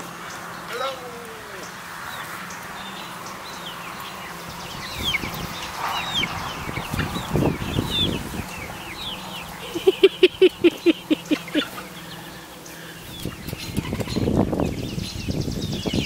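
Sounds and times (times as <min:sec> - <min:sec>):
chicks peeping: 0:00.1 - 0:16.0
loud low clucks: 0:09.6 - 0:12.0.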